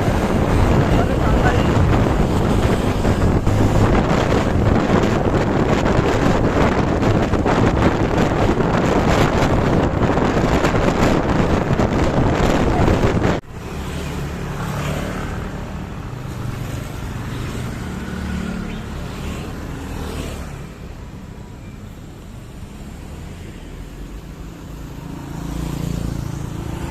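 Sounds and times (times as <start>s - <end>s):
wind buffeting microphone: 0.0s - 18.6s
road traffic: 0.0s - 26.9s.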